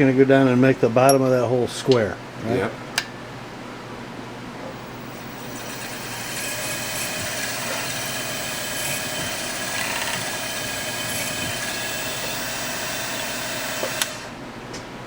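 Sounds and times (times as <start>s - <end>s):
milling machine spindle whining: 4.8s - 14.4s.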